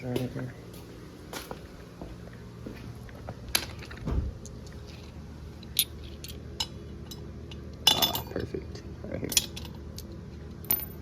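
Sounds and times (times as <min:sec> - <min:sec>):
metal tools clinking: 0:07.8 - 0:08.5.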